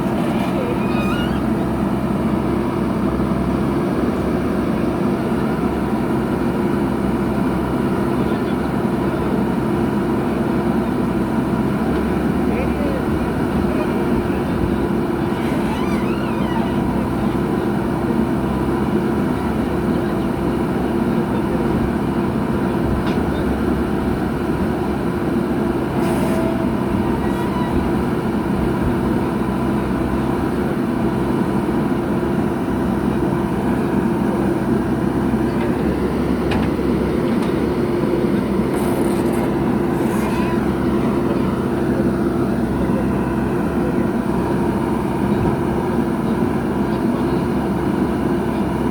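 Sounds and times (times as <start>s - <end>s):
high-pitched squeaks or clanks: 0.0s - 1.6s, 15.2s - 17.0s, 27.1s - 28.0s, 38.8s - 40.7s
heavy diesel engine running: 0.0s - 48.9s.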